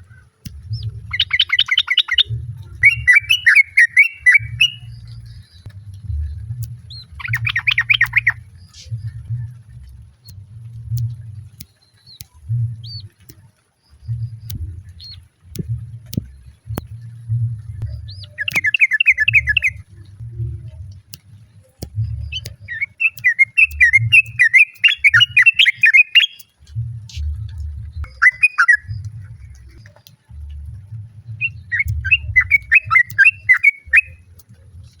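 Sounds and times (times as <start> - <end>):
low rumble: 0.0 - 3.4, 4.2 - 22.9, 26.5 - 35.0
bird chattering calls: 1.1 - 4.9, 7.2 - 8.9, 18.2 - 19.8, 22.7 - 26.6, 28.1 - 28.9, 31.4 - 34.2.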